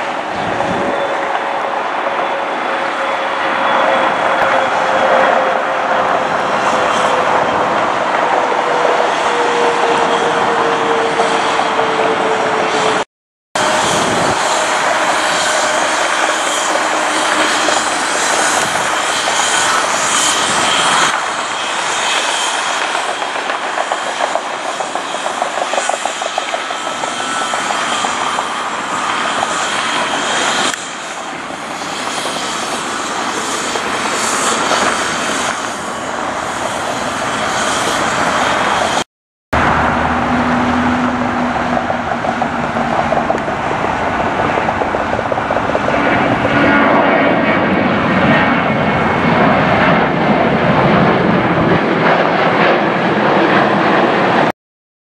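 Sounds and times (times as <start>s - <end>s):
jet airliner engines whining: 0.0s - 54.5s.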